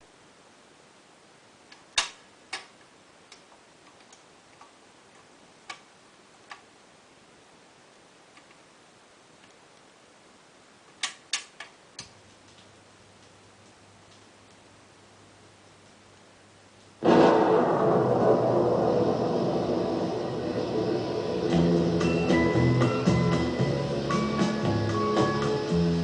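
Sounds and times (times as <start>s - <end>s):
faint hiss: 0.0s - 26.0s
sharp clicks and pops: 1.7s - 6.7s, 10.9s - 14.6s
low hum: 17.0s - 24.9s.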